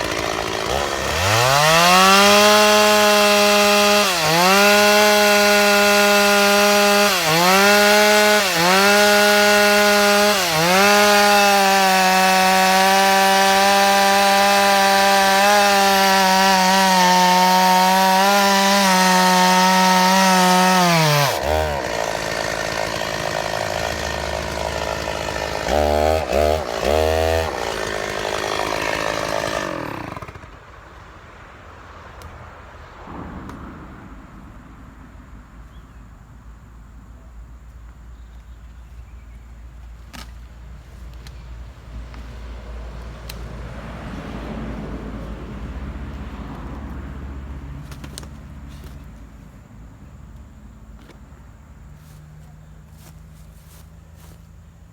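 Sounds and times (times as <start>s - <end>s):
chainsaw revving and idling: 0.0s - 30.7s, 50.1s - 54.9s
vehicle passing: 31.6s - 36.0s, 42.3s - 48.8s
steady low rumble: 32.7s - 37.4s.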